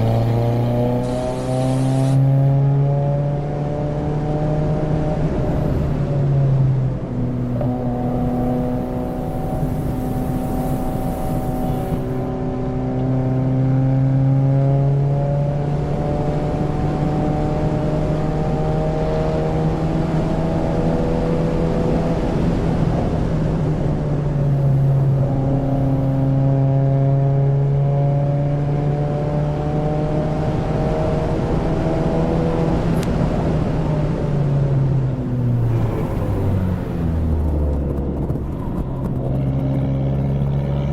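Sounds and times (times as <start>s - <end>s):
car engine revving under load: 0.0s - 15.6s, 34.6s - 40.9s.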